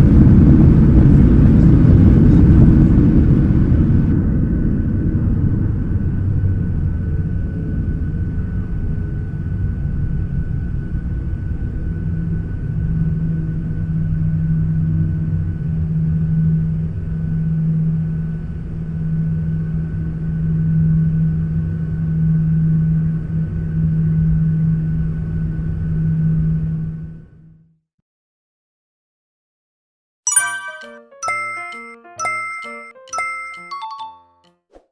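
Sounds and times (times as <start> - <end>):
airliner cabin engine rumble: 0.0 - 4.8.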